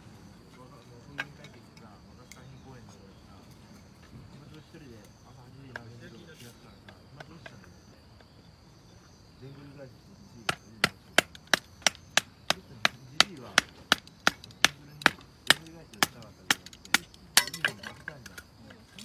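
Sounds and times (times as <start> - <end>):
sharp knocks on wood: 10.4 - 17.8.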